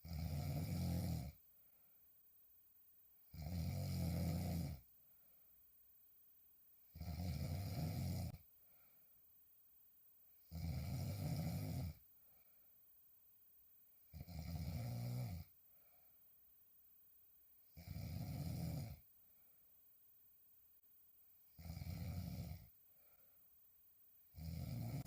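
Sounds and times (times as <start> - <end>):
woman snoring: 0.0 - 1.4, 3.3 - 4.9, 6.9 - 8.4, 10.5 - 12.0, 14.1 - 15.6, 17.7 - 19.1, 21.5 - 22.8, 24.3 - 25.0.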